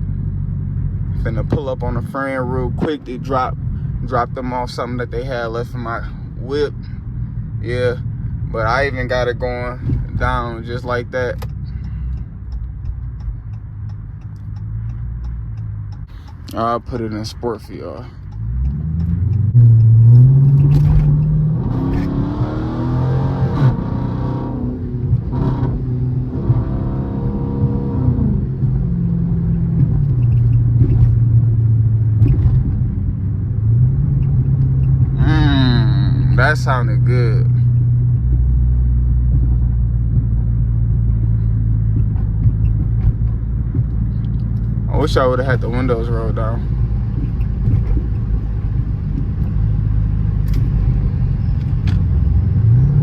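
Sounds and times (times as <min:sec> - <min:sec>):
car engine accelerating hard: 0:00.0 - 0:53.0.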